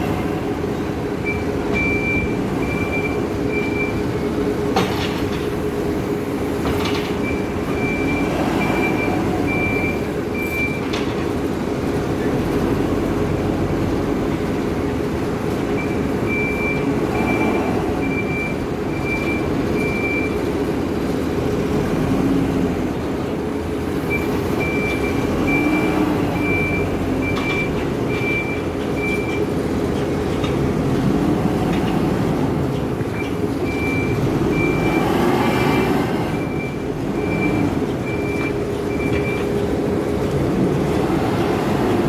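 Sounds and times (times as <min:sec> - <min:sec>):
diesel engine running: 0:00.0 - 0:42.0
reversing alarm beeps: 0:01.2 - 0:04.2, 0:07.2 - 0:11.0, 0:15.8 - 0:20.4, 0:24.0 - 0:29.5, 0:33.0 - 0:39.5.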